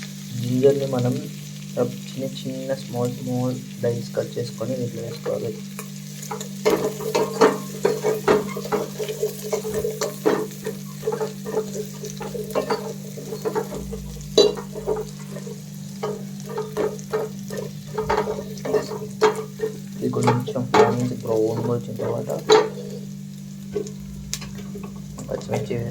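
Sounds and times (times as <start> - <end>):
onions sizzling in oil: 0.0 - 25.9
low steady hum: 0.2 - 25.9
spatula scraping a pan: 5.2 - 25.5.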